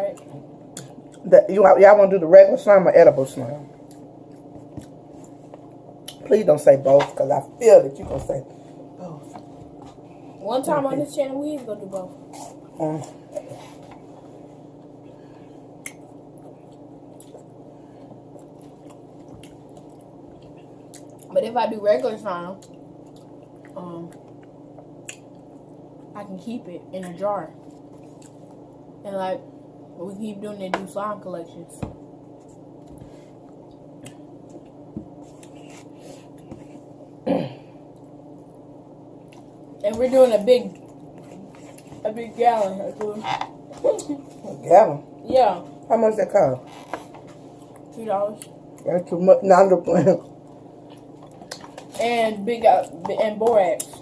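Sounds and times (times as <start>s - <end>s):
steady low hum: 0.0s - 54.0s
mouth chewing sounds: 18.2s - 21.3s
person clearing throat: 37.2s - 37.8s.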